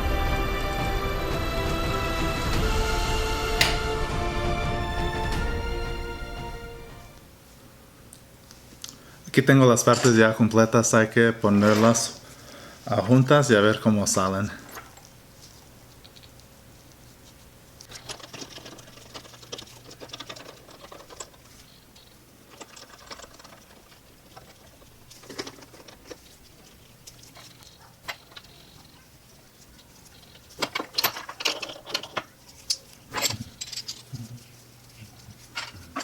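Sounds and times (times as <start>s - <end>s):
faint steady hum: 2.7s - 9.8s
small metal parts clinking: 30.2s - 34.1s.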